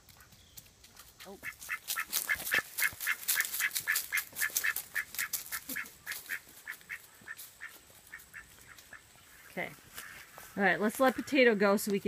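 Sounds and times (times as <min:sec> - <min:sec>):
drake raspy calls: 0:01.3 - 0:11.6.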